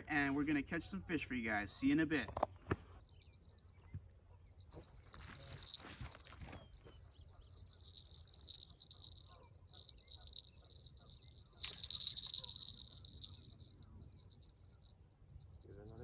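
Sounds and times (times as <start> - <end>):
high-pitched insect-like trill: 3.0 - 4.0, 4.6 - 16.0
rustling noise: 4.8 - 7.0.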